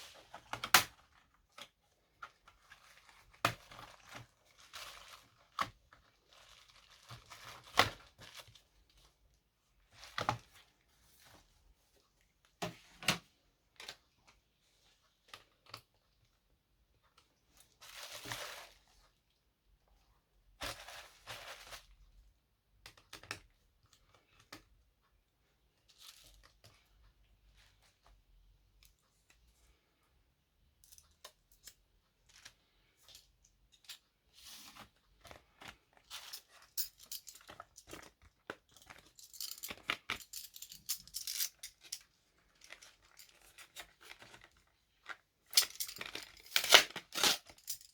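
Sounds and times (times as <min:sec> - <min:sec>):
crinkling rustling: 0:00.1 - 0:09.1, 0:20.6 - 0:22.0, 0:34.5 - 0:47.9.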